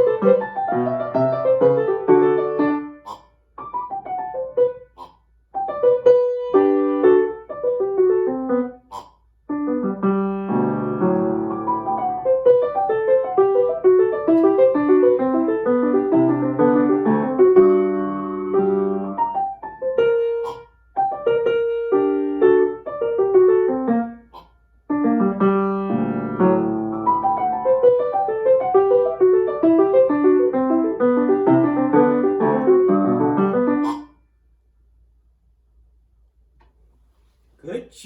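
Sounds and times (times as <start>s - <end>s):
piano music in quick runs: 0.0s - 2.9s, 9.6s - 20.4s, 24.9s - 33.8s.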